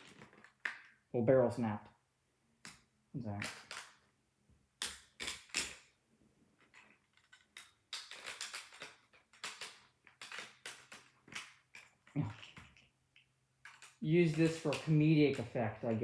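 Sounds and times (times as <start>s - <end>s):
plastic blocks clicking: 0.0s - 1.1s, 2.6s - 4.0s, 4.8s - 5.9s, 6.6s - 16.0s.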